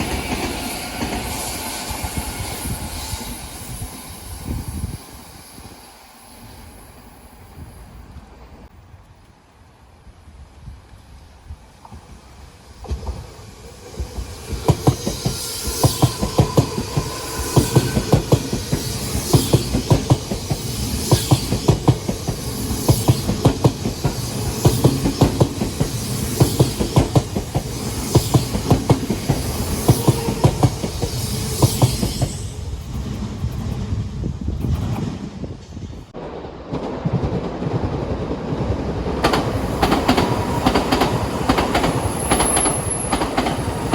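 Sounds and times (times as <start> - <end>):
faint train whine: 0.0 - 37.9, 38.7 - 43.9
train rumble: 0.0 - 43.9
train wheels clacking over rail joints: 12.8 - 35.8, 39.1 - 43.9.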